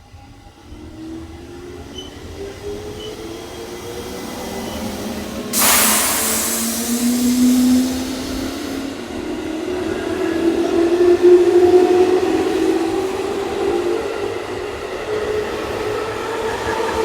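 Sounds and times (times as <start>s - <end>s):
loud hiss: 5.5s - 8.8s.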